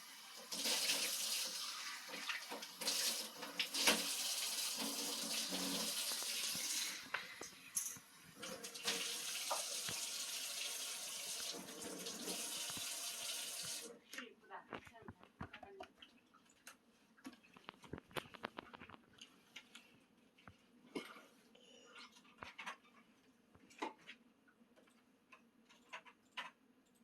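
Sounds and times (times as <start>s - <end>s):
water running in a stream: 8.3s - 13.9s.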